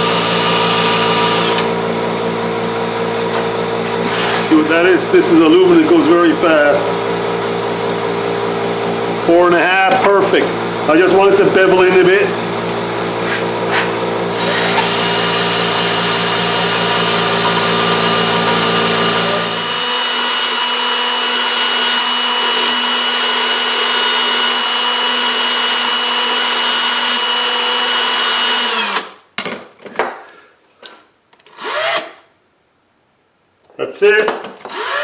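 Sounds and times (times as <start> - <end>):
electric drill whining: 0.0 - 1.8, 14.3 - 29.2, 31.4 - 32.2, 34.6 - 35.0
scraping and handling sounds: 13.2 - 14.0.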